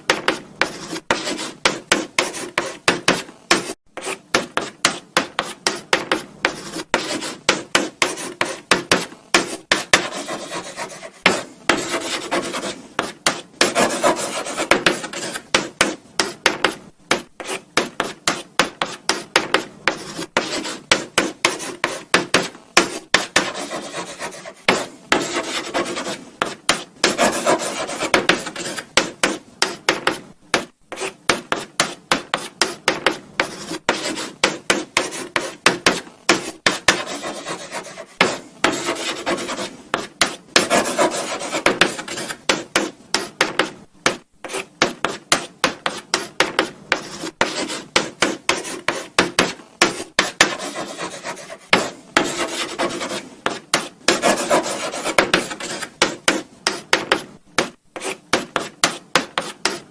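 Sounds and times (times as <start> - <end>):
chalk scratching on blackboard: 0.0 - 59.9.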